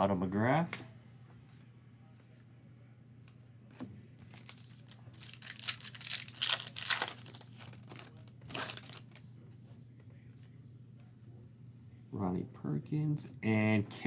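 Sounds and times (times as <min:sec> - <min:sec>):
low steady hum: 0:00.0 - 0:14.0
plastic wrapper crinkling: 0:04.2 - 0:09.2.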